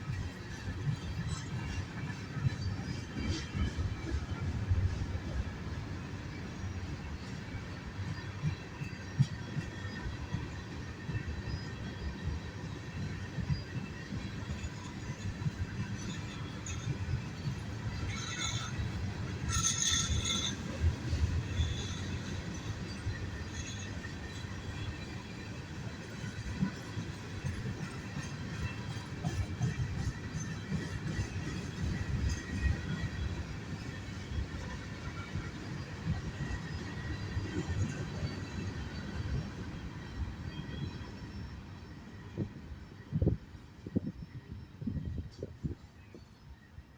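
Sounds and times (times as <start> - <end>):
freight train rolling past: 0.0 - 46.9
high wheel squeal: 18.1 - 20.8.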